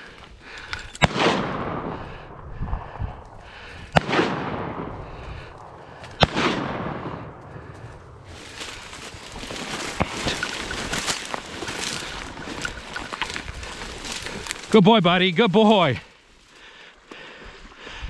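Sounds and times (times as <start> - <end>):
shotgun shots with echo: 1.0 - 2.0, 3.9 - 7.6.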